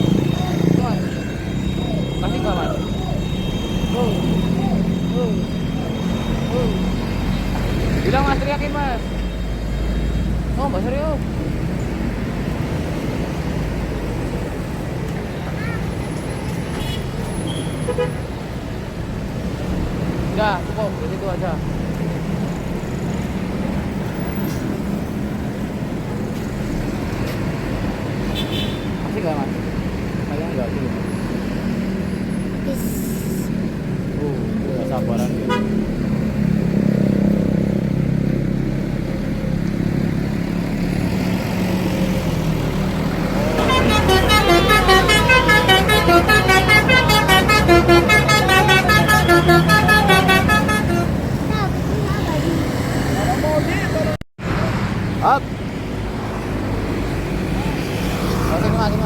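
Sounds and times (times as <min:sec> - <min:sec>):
bus melody horn playing: 0:00.0 - 0:07.9, 0:34.7 - 0:36.1, 0:43.3 - 0:51.6
diesel bus engine hum: 0:00.0 - 0:59.0
road traffic noise: 0:00.0 - 0:59.0.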